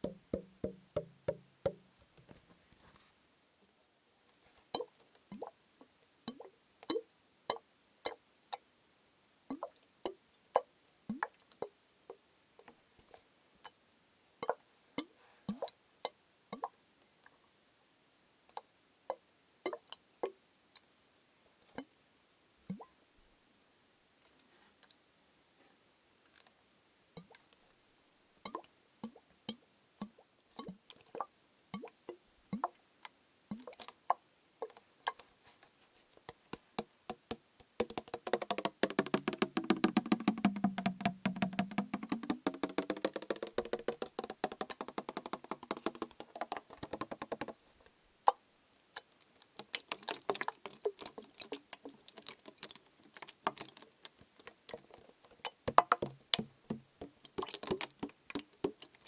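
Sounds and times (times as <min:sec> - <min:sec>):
fingertip tapping plastic bottle: 0:00.0 - 0:02.4, 0:36.3 - 0:47.6, 0:49.6 - 0:59.0.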